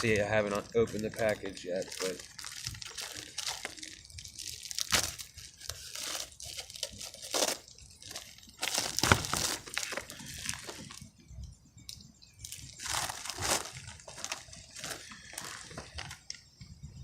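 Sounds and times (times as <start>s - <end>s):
packaging rustling and crinkling: 0.0s - 11.3s, 12.4s - 16.7s.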